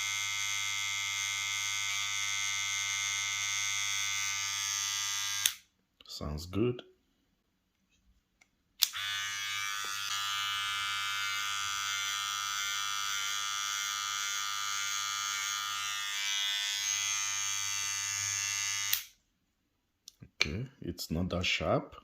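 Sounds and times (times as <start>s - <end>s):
hair trimmer buzzing: 0.0s - 5.6s, 8.8s - 19.1s
hair trimmer switch click: 5.2s - 5.6s, 8.8s - 10.2s, 18.8s - 19.1s.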